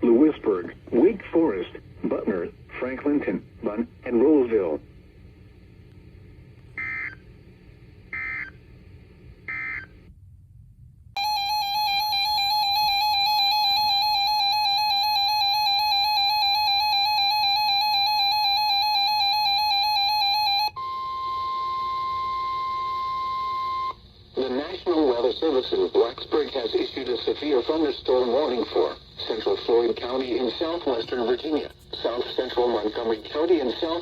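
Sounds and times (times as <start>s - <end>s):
steady alert tone: 11.2s - 20.7s
two-tone attention signal: 11.2s - 24.0s.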